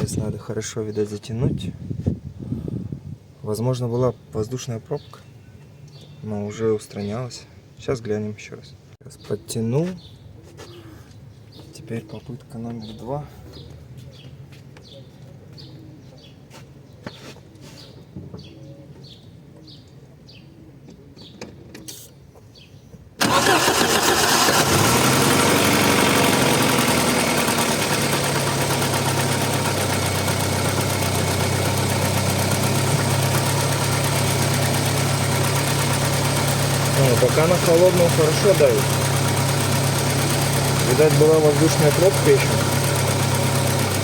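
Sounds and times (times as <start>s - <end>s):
car engine starting and idling: 23.2s - 44.0s.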